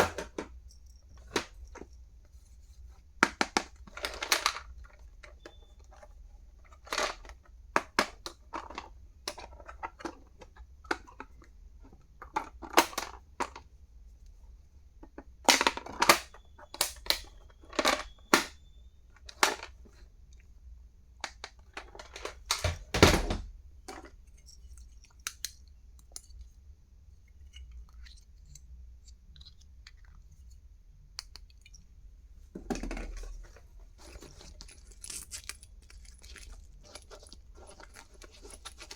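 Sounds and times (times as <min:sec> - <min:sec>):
plastic packaging clicks and crinkles: 0:33.1 - 0:38.9.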